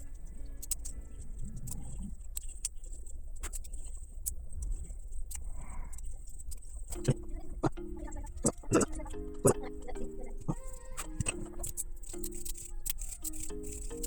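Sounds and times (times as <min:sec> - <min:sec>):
clock mechanism clicks: 0:10.6 - 0:14.0.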